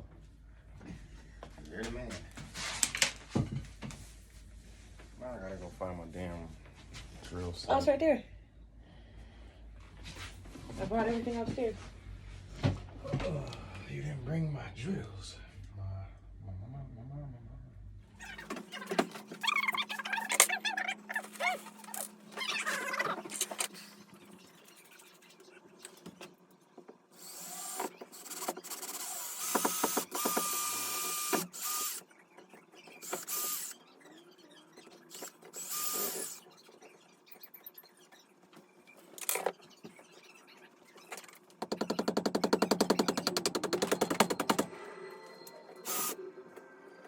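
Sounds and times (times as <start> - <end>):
power drill whining: 27.2 - 32.0, 33.0 - 33.8, 35.1 - 36.4, 45.8 - 46.2.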